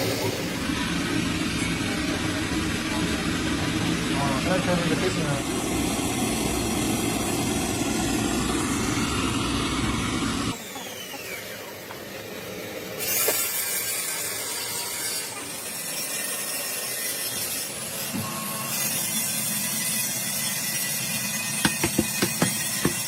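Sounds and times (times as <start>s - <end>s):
hand tool scraping hiss: 12.9s - 23.0s.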